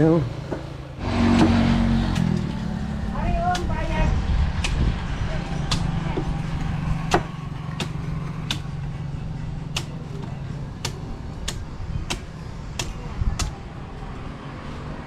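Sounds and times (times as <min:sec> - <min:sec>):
low engine hum: 0:00.0 - 0:15.0
machete chopping coconut: 0:01.2 - 0:02.5, 0:03.5 - 0:03.8, 0:04.6 - 0:04.9, 0:05.6 - 0:06.3, 0:07.0 - 0:08.7, 0:09.7 - 0:13.6.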